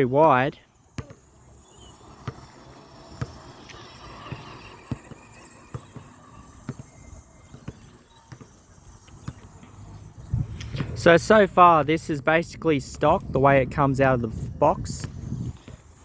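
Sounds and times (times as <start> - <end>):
faint electric rc truck motor: 0.7 - 10.9.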